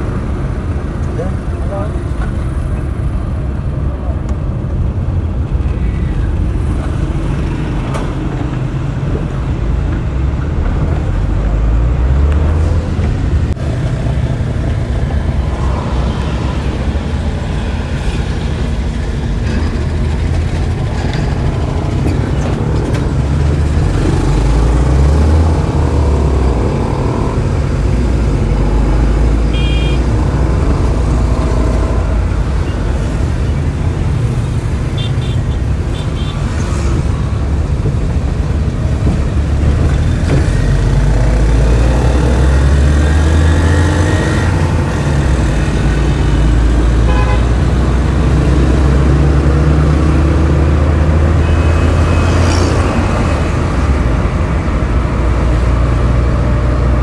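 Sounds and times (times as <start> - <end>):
traffic rumble: 0.0 - 57.0
car horn toots: 29.4 - 30.4, 34.9 - 36.6, 47.0 - 47.7, 51.2 - 52.5.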